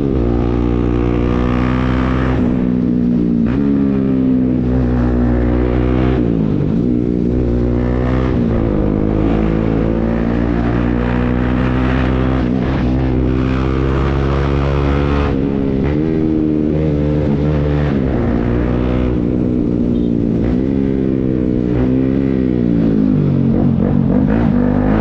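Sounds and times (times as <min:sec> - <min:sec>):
loud motorcycle engine: 0:00.0 - 0:25.0.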